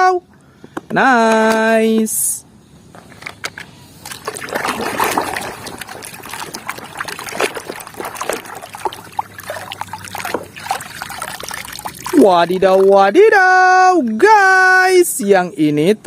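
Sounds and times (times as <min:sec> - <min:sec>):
water splashing and trickling: 0:04.0 - 0:14.3
objects knocking in water: 0:04.1 - 0:12.2.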